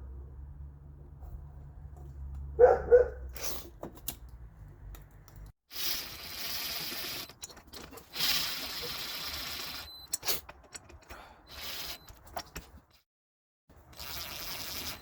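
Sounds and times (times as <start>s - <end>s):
dog barking: 2.6s - 3.3s.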